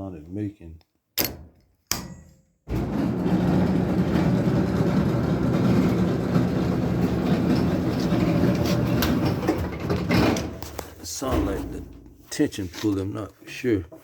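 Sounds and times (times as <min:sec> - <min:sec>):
clothes dryer rumbling: 0:02.7 - 0:12.2.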